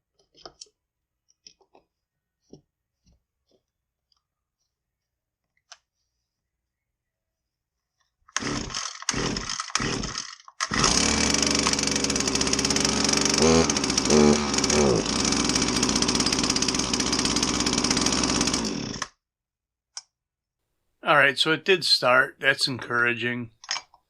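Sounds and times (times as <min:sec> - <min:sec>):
recoil starter pulls: 0:08.3 - 0:19.1
brush cutter engine revving: 0:08.4 - 0:19.1.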